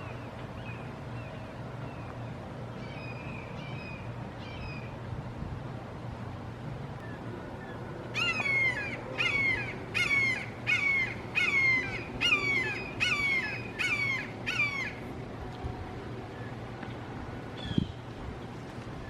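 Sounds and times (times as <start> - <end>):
hawk kee-aah calls: 7.6 - 15.0.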